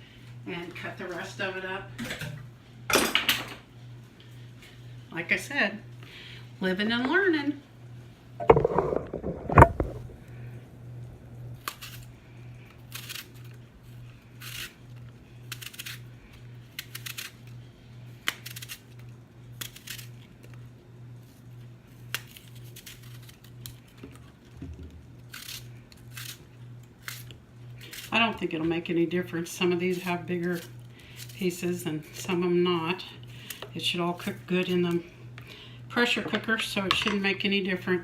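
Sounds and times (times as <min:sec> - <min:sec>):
knife cutting apple: 0:12.7 - 0:16.1, 0:16.7 - 0:17.6, 0:18.2 - 0:20.6, 0:22.0 - 0:28.4.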